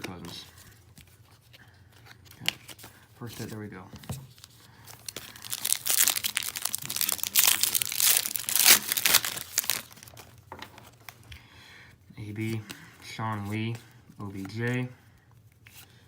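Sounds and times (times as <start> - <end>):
foil wrapper crinkling and tearing: 4.3 - 10.4.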